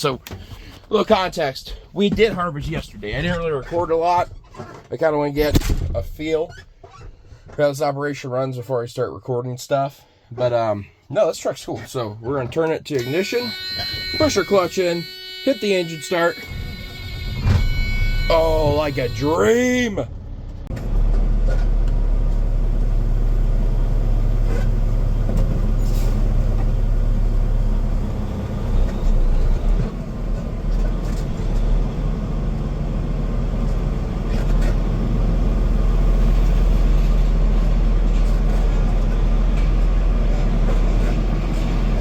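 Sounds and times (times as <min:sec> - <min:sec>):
diesel engine running: 0:13.4 - 0:42.0.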